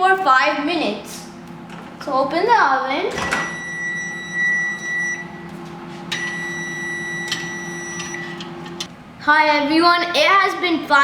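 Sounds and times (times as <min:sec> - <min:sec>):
steady low hum: 0:00.0 - 0:10.8
microwave beeping: 0:03.0 - 0:08.9.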